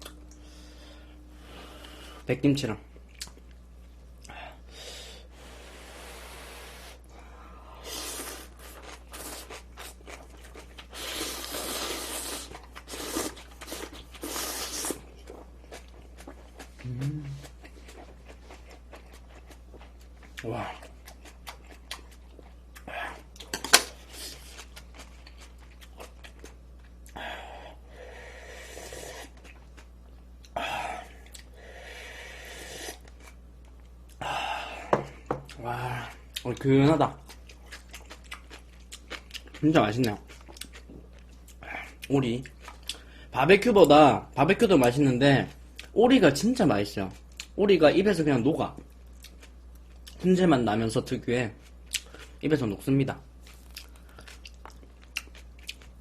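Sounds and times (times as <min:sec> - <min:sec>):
close eating noises: 0:00.0 - 0:56.0
person slurping noodles: 0:10.9 - 0:15.0, 0:32.2 - 0:33.0
chewing: 0:12.3 - 0:27.2, 0:35.4 - 0:43.0, 0:48.8 - 0:50.3, 0:53.4 - 0:56.0.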